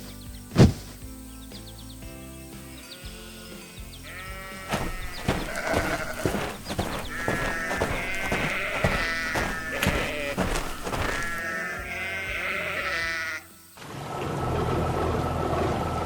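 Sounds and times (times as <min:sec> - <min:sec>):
farm animals bleating: 0:02.8 - 0:13.5.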